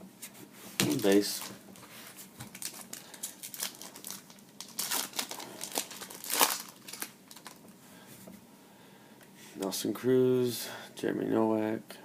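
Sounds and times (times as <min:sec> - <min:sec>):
wrapper crinkling and tearing: 0:00.8 - 0:01.6, 0:02.4 - 0:07.6.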